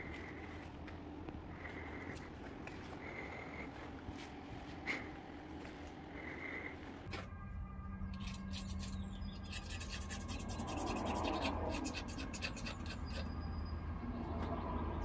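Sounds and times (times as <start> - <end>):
steady low hum: 0.0 - 15.0
blade scraping metal: 8.1 - 13.4.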